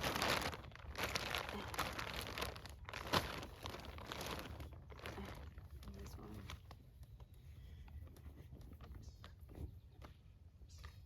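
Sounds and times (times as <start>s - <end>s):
clothing rustling: 0.0s - 6.7s.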